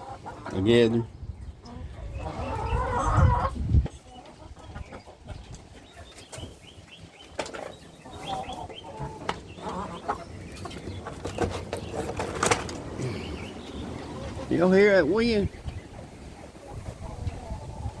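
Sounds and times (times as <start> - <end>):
hens clucking and squawking: 0.0 - 18.0
wind on microphone: 1.1 - 5.8, 15.4 - 18.0.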